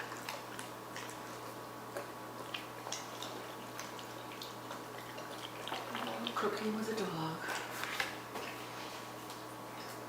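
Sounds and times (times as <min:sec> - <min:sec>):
dog licking and eating: 0:00.0 - 0:06.8.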